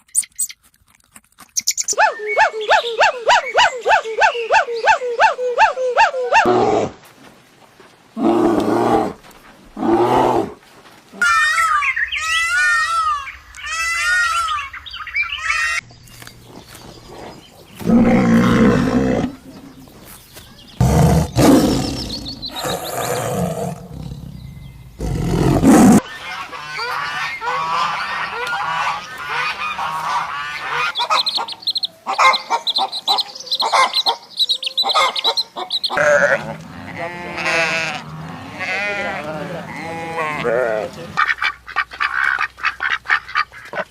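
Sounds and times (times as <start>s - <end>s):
animal calls: 1.6s - 6.9s, 25.0s - 43.9s.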